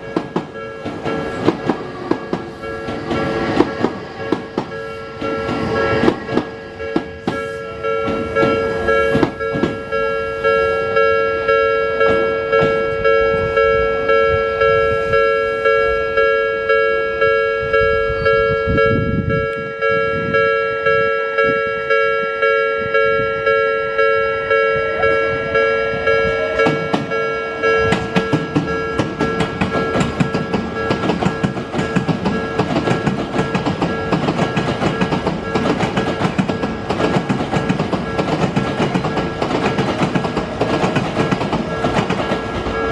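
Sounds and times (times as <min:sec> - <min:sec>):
train wheels clicking over rail joints: 0:00.0 - 0:10.6, 0:12.0 - 0:13.5, 0:26.3 - 0:42.9
level-crossing warning bell: 0:00.0 - 0:42.9.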